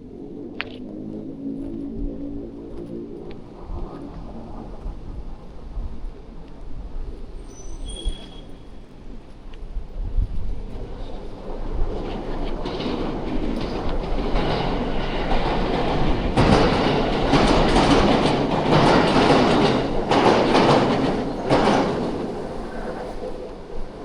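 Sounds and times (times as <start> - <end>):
train rumbling past: 0.0 - 24.0
train wheels knocking: 10.8 - 23.4.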